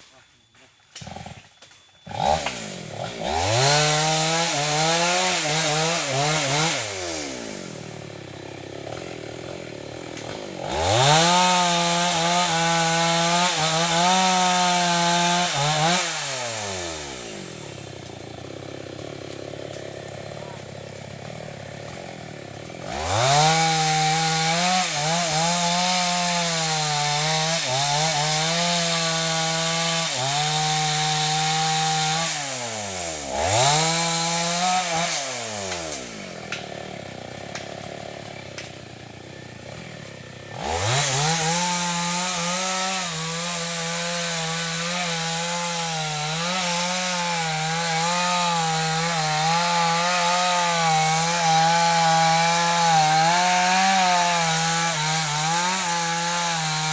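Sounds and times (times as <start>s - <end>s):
chainsaw cutting wood: 0.0s - 56.9s.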